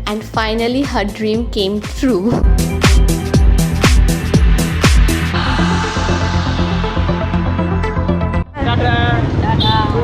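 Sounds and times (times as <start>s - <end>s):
kick-drum beat: 0.0s - 5.5s
synth bass and chords: 2.4s - 8.6s.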